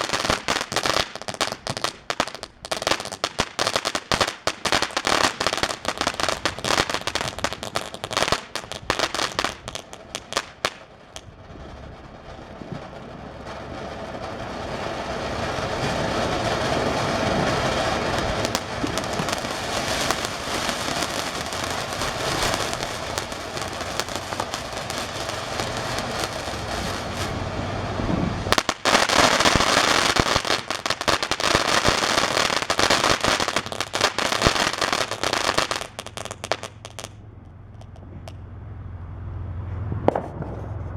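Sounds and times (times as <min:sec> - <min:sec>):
fountain firework crackling: 0:00.0 - 0:38.9, 0:40.0 - 0:40.9
firework hissing spray: 0:14.0 - 0:37.1.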